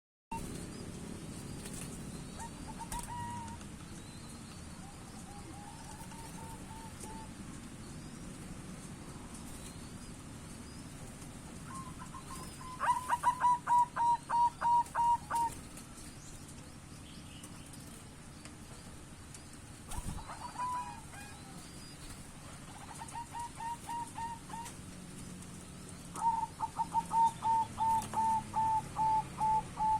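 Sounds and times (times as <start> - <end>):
low background rumble: 0.4 - 29.8
dove cooing: 1.7 - 3.7, 4.8 - 7.6, 11.6 - 15.8, 19.9 - 24.9, 26.1 - 29.9.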